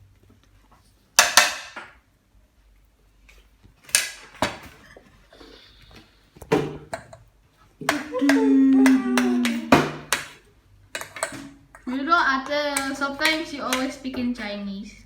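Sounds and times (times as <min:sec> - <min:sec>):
dishes knocking and clattering: 0:01.2 - 0:02.0, 0:06.4 - 0:14.3
child's voice: 0:08.1 - 0:09.8, 0:11.9 - 0:15.0.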